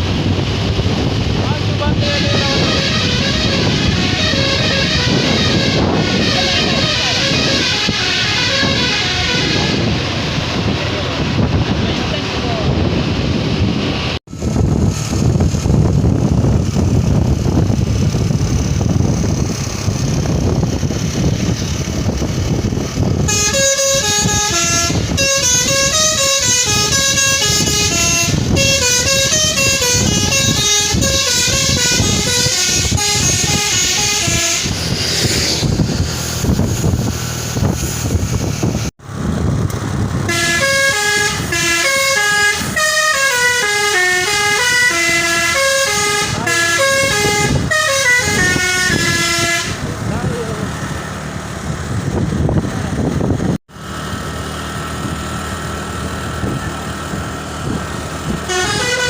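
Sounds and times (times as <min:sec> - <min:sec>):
bus engine and road noise: 0:00.0 - 0:59.0
tuned air horns playing melody: 0:01.9 - 0:10.7, 0:23.2 - 0:36.0, 0:40.2 - 0:49.9, 0:58.4 - 0:59.0.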